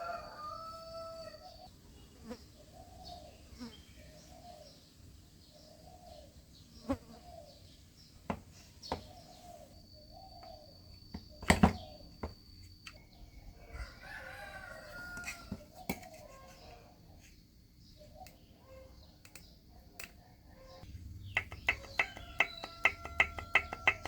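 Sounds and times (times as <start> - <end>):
sharp taps: 21.3 - 24.0.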